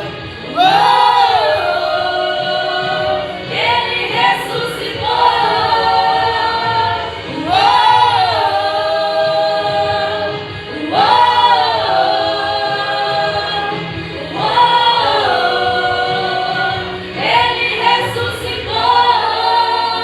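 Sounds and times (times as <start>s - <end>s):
choir singing held notes: 0.0s - 20.0s.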